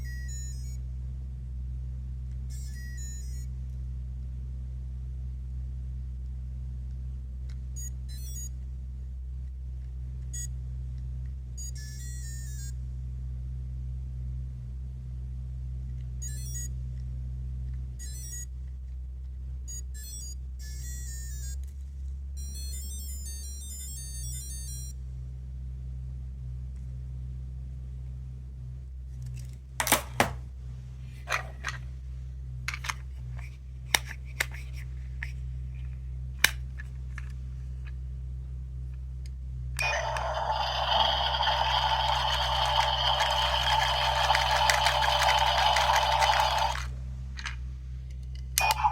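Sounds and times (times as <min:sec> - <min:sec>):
steady low hum: 0:00.0 - 0:48.9
plastic clicks and snaps: 0:36.4 - 0:37.4
run of electronic tones: 0:39.8 - 0:46.9, 0:48.6 - 0:48.9
short high electronic beep: 0:48.6 - 0:48.9.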